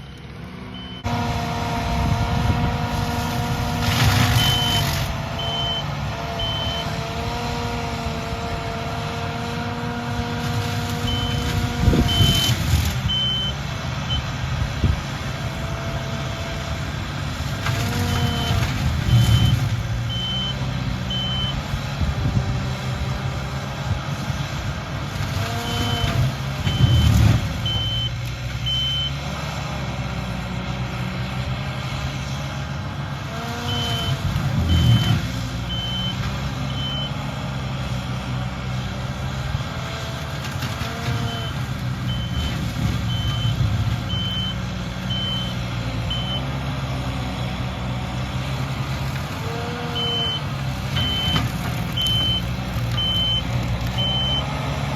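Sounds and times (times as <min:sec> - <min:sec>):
skid steer engine running: 0:00.0 - 0:54.9
backup alarm beeping: 0:04.3 - 0:06.9, 0:11.1 - 0:12.4, 0:43.1 - 0:45.5, 0:50.0 - 0:54.5.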